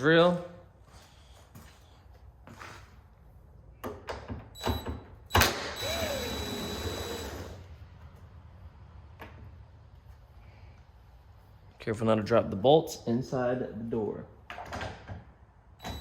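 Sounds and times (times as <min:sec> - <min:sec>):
cordless drill whining: 0:05.4 - 0:07.6.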